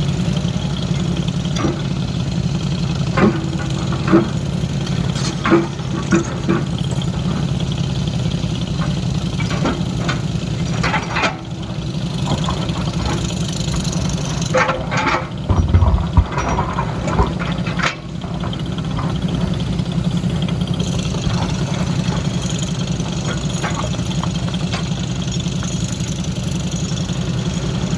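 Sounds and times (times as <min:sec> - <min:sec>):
diesel engine running: 0:00.0 - 0:27.9
heavy thump: 0:15.5 - 0:17.4
sharp knocks: 0:15.5 - 0:17.4.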